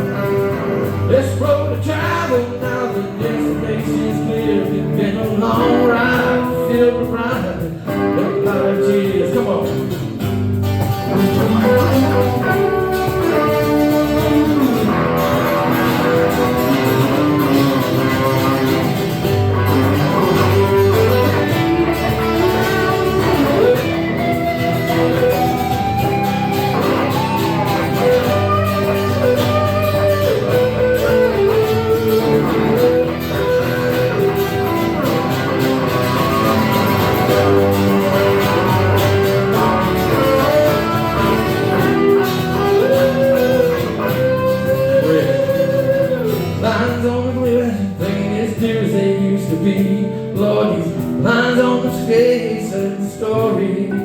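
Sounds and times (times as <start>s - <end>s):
live band playing: 0.0s - 54.0s
lead guitar solo with bending notes: 10.0s - 47.2s.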